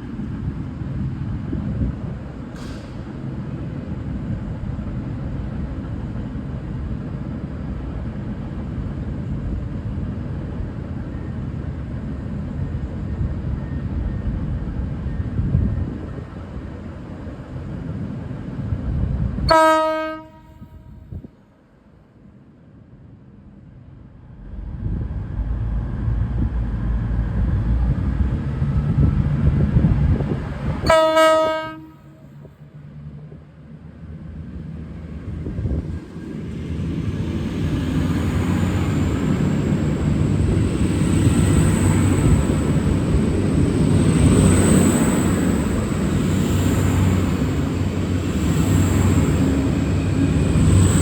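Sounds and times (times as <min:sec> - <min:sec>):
diesel train rumbling: 0:00.0 - 0:21.3, 0:23.4 - 0:51.0
train horn blast: 0:19.5 - 0:21.1, 0:30.8 - 0:32.4.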